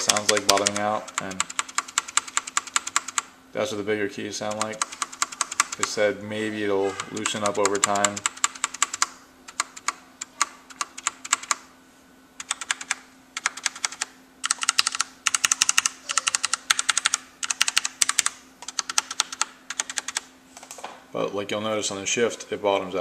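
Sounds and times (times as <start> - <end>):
mechanical keyboard typing: 0.0 - 3.3, 4.4 - 6.0, 6.9 - 11.6, 12.4 - 20.2
faint steady hum: 0.0 - 23.0.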